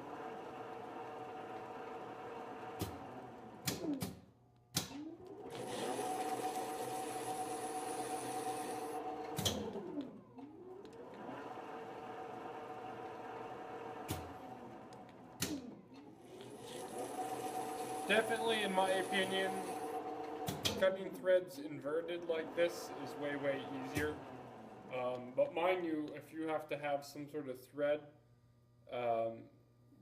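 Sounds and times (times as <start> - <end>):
lathe motor and gear hum: 0.0 - 4.1, 4.8 - 26.2
sharp clunks of lathe controls: 9.0 - 10.2, 19.7 - 20.9.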